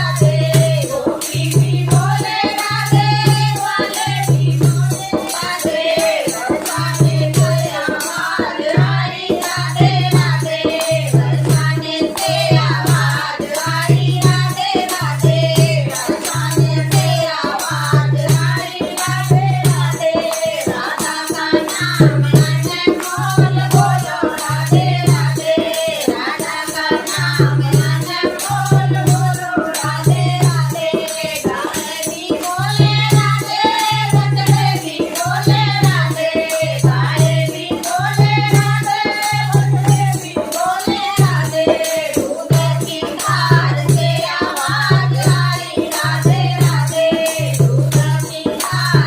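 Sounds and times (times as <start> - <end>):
jingling hand percussion: 0.0 - 49.0
voices chanting devotional song: 0.0 - 49.0.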